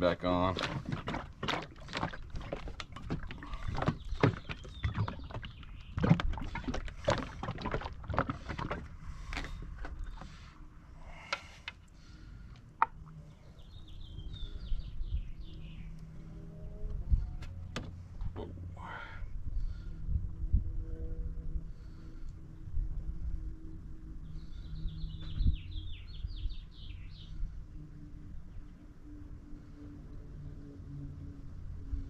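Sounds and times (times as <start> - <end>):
oil sloshing in shaken jug: 0.4 - 10.3
plastic jug knocking: 0.6 - 9.9.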